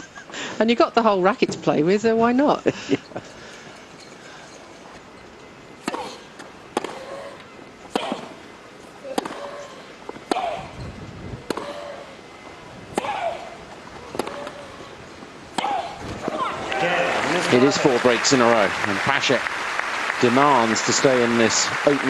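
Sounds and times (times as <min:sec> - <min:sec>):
racket striking tennis ball: 0:05.8 - 0:10.8, 0:11.4 - 0:12.0, 0:12.9 - 0:14.9, 0:15.5 - 0:16.6.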